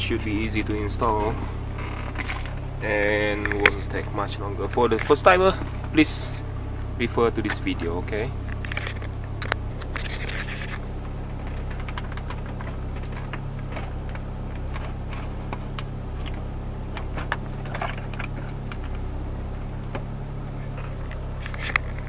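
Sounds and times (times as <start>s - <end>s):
low hum: 0.0s - 22.0s
small clicks and taps: 8.5s - 10.8s.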